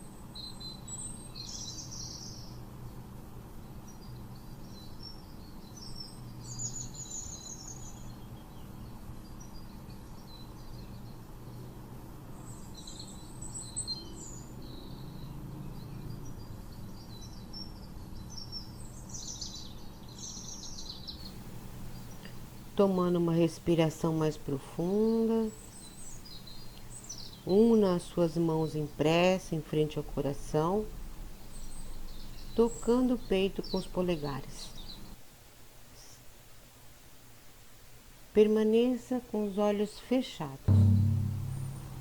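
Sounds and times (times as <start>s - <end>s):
low background hum: 21.2s - 36.2s, 38.0s - 42.0s.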